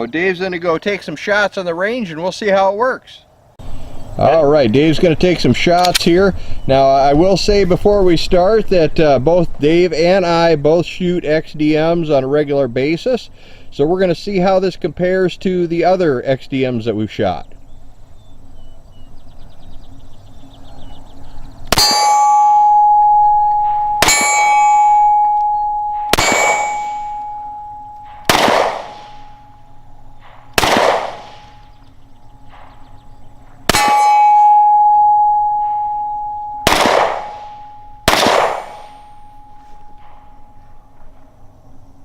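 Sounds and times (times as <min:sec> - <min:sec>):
pistol shots: 0:21.7 - 0:22.8, 0:23.6 - 0:25.4, 0:26.0 - 0:29.6, 0:30.2 - 0:31.7, 0:33.7 - 0:34.6, 0:36.5 - 0:39.3
steel target ringing clang: 0:21.7 - 0:31.8, 0:33.7 - 0:40.9.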